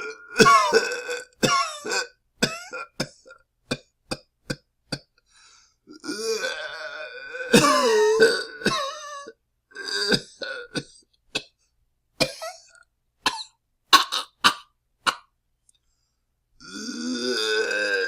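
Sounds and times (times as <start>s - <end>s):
person coughing: 0.4s - 0.8s, 7.6s - 8.0s.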